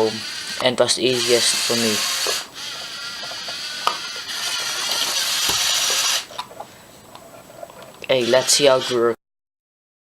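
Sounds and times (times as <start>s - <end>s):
servo motors whirring through gears: 1.1s - 6.3s.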